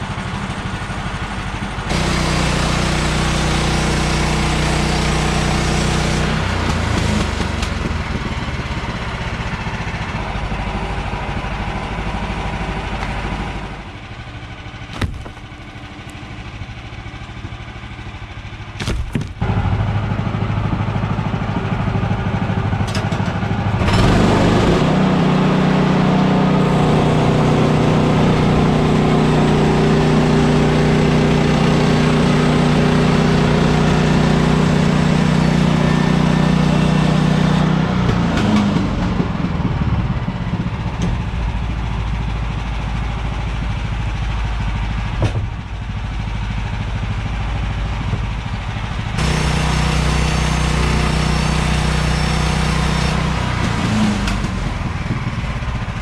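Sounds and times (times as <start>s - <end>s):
small gasoline engine running: 0.0s - 56.0s.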